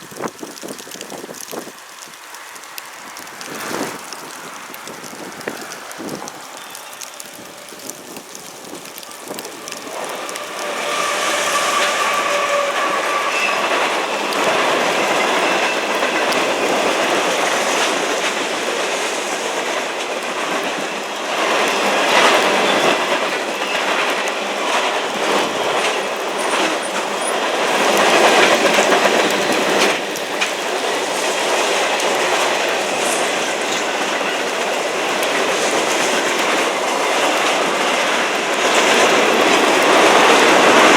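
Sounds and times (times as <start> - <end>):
train wheel squeal: 10.0 - 16.8, 21.3 - 29.9.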